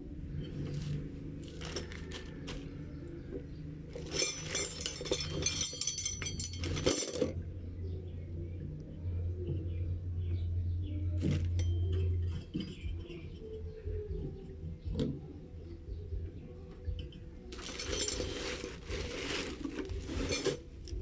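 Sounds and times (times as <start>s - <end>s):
low steady hum: 0.0s - 21.0s
small metal objects clinking: 0.4s - 3.2s, 3.9s - 7.4s, 17.1s - 21.0s.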